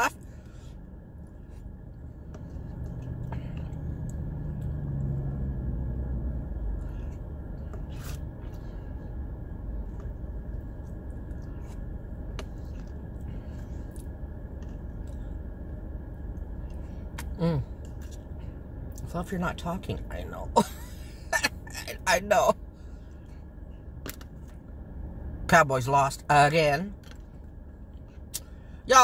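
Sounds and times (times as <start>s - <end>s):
car engine and air conditioning hum: 0.0s - 29.0s
faint clicks and rustles of eating: 0.3s - 5.1s, 6.7s - 19.1s, 26.9s - 28.6s.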